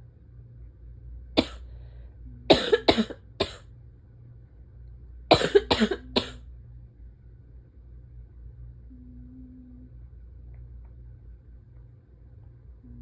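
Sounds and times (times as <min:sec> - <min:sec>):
person coughing harshly: 0:01.4 - 0:01.7, 0:02.5 - 0:03.6, 0:05.3 - 0:06.4.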